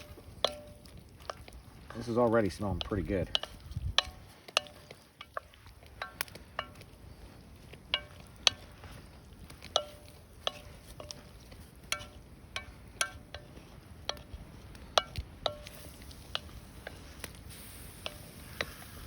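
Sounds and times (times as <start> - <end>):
metal spoon clinking on pan: 0.0 - 1.4, 2.8 - 6.9, 7.9 - 8.7, 9.7 - 16.6.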